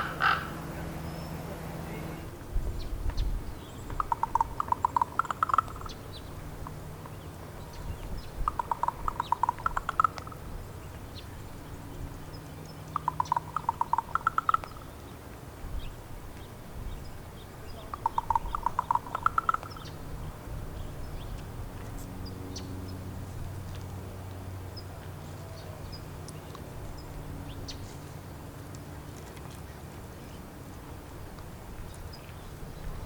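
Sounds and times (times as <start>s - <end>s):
raven knocking call: 0.0s - 0.6s, 3.9s - 6.8s, 8.4s - 10.4s, 12.9s - 14.9s, 17.8s - 20.0s.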